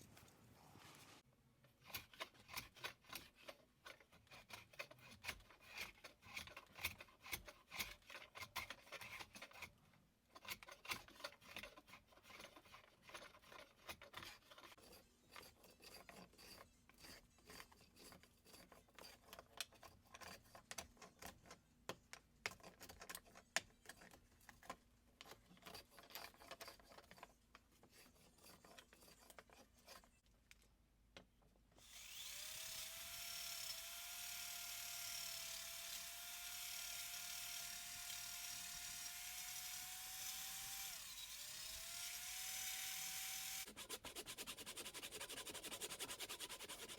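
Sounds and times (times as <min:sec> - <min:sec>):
rubbing and scraping strokes: 0:10.6 - 0:21.5, 0:22.6 - 0:30.3, 0:40.4 - 0:46.9
electric power tool whine: 0:31.8 - 0:43.7.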